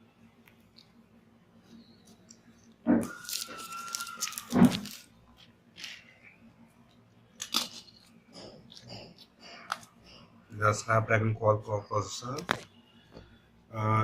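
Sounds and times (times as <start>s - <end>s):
packaging tearing: 3.0s - 5.2s
packaging rustling: 3.0s - 6.0s.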